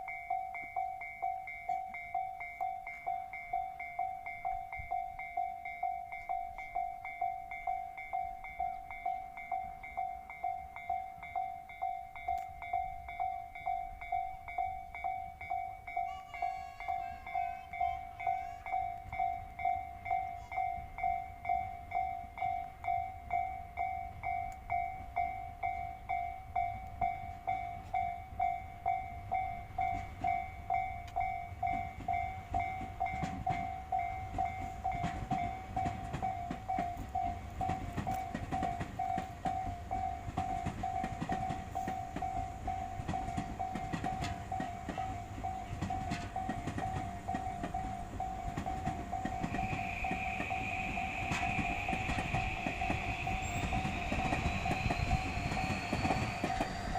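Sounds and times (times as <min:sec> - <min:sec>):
level crossing warning bell: 0:00.0 - 0:56.9
train wheels clattering: 0:26.1 - 0:56.9.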